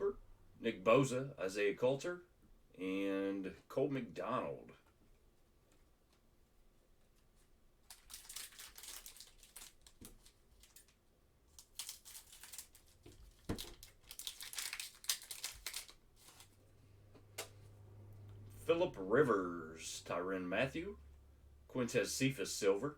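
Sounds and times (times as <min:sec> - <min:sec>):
wrapper tearing and crinkling: 0:07.8 - 0:16.6.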